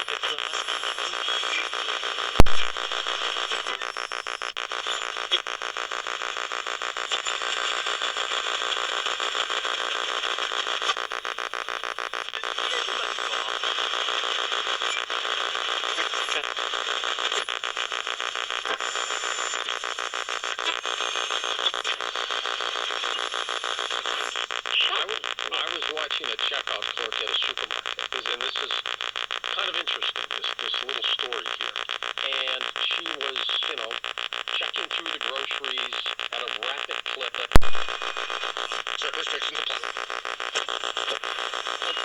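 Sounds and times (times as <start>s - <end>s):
radio static hiss: 0.0s - 42.0s
rapid pulsing buzz: 37.6s - 41.8s.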